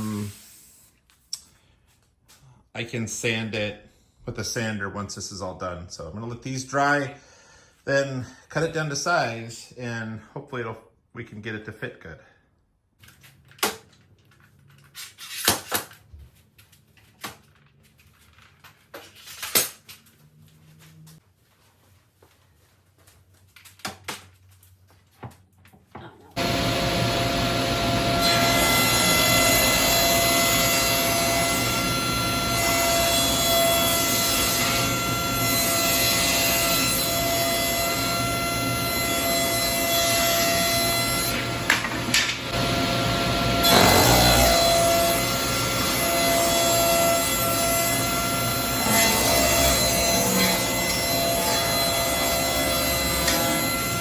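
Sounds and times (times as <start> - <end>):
power saw cutting wood: 26.4 - 54.0.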